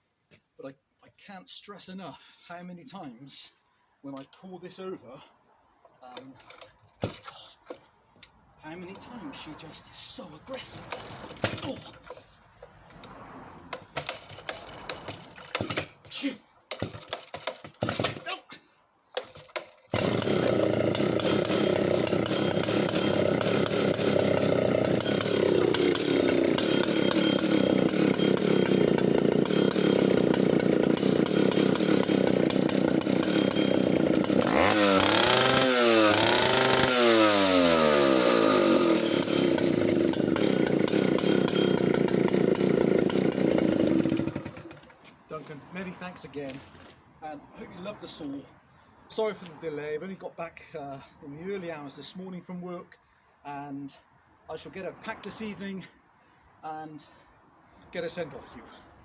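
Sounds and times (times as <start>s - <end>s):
chainsaw engine revving and idling: 10.5s - 12.2s, 13.7s - 16.0s, 16.7s - 18.2s, 19.2s - 44.9s.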